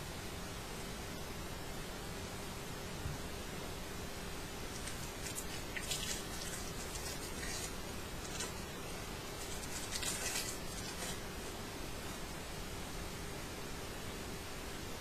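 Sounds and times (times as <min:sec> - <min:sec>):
recording hiss: 0:00.0 - 0:15.0
rustling crackles: 0:04.6 - 0:11.6.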